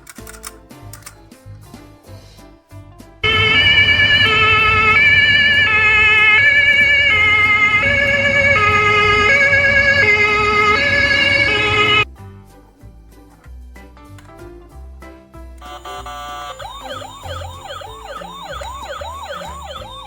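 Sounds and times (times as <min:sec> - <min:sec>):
toy two-tone siren: 0:03.2 - 0:12.0, 0:15.6 - 0:20.0.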